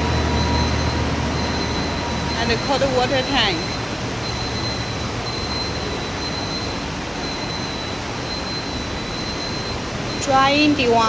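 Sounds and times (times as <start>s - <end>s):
machinery hum and rush: 0.0s - 5.6s.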